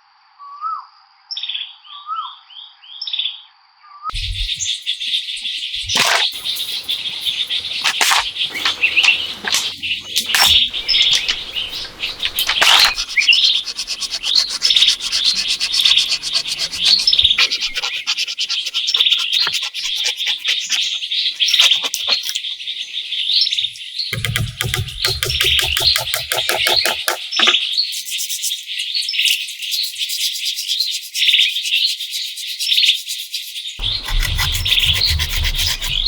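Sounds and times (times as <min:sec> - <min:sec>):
rubbing sounds: 0:04.1 - 0:22.4, 0:24.2 - 0:27.6, 0:33.8 - 0:36.0
small birds chirping chorus: 0:04.1 - 0:36.0
sharp knocks: 0:24.2 - 0:27.6.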